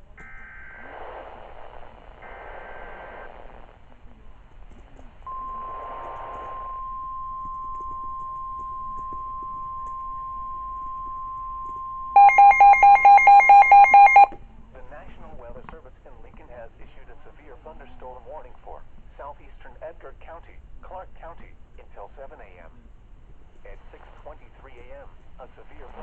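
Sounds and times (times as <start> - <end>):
steady warning alarm tone: 5.3 - 14.4.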